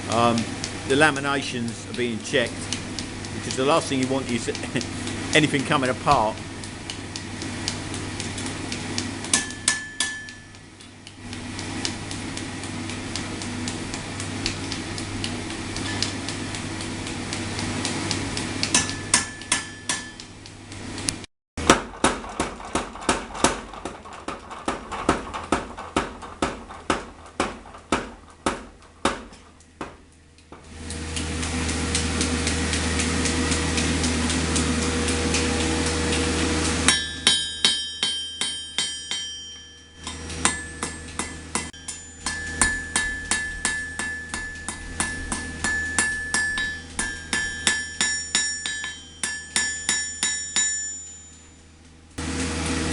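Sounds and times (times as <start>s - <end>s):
machinery hum: 0.0s - 52.9s
hammer striking metal: 9.3s - 10.6s, 18.6s - 20.3s, 21.6s - 30.0s, 36.8s - 51.6s.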